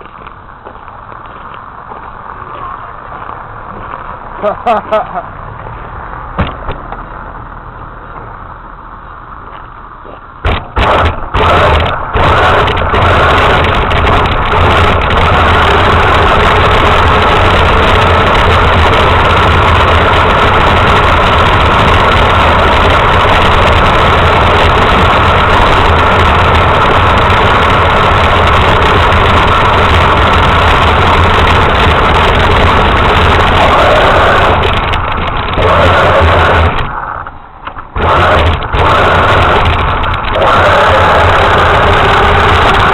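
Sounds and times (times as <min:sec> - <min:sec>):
toy truck motor running: 0:10.5 - 0:42.9.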